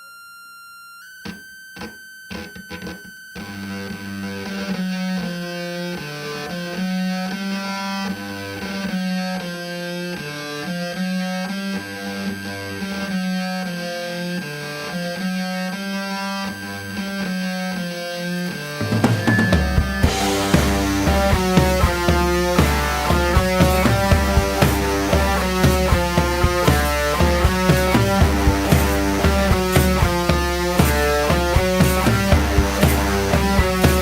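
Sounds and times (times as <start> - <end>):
guitar riff: 1.2 - 34.0
steady high-pitched tone: 11.4 - 34.0
bass line: 11.9 - 34.0.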